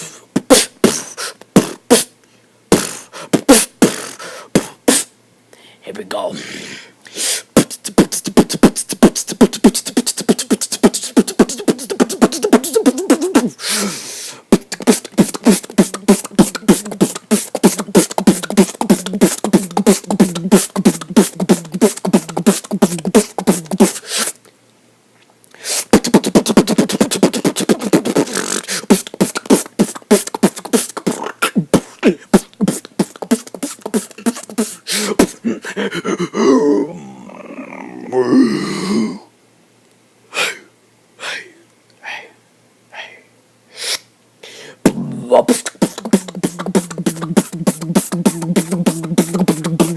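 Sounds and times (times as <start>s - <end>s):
beatboxing drum sounds: 0.0s - 5.1s, 7.2s - 24.4s, 25.6s - 36.2s, 44.8s - 49.9s.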